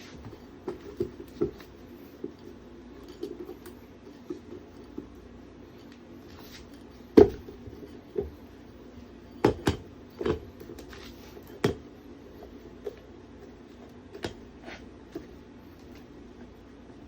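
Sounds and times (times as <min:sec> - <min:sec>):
faint hum: 0:00.0 - 0:17.0.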